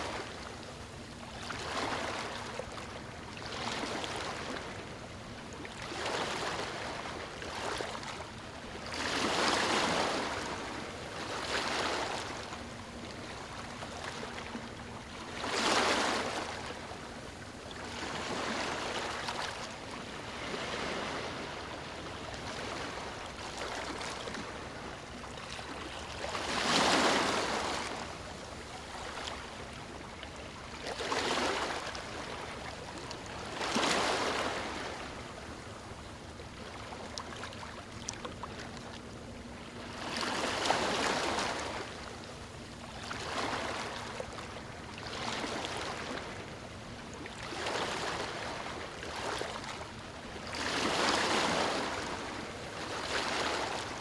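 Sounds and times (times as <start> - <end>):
small waves breaking on beach: 15.2 - 17.0, 17.8 - 35.7, 39.8 - 42.1, 47.3 - 54.0.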